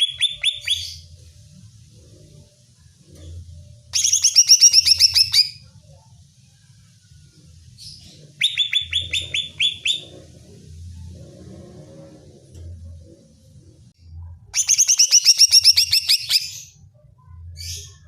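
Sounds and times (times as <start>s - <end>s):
bird singing high sweeping notes: 14.6s - 16.8s.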